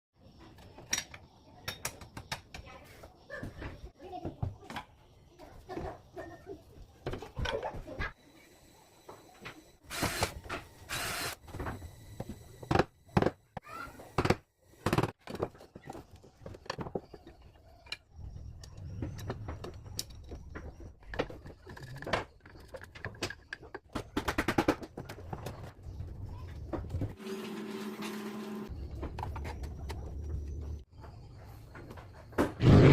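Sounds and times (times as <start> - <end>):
tools and wood knocking: 14.2 - 25.6.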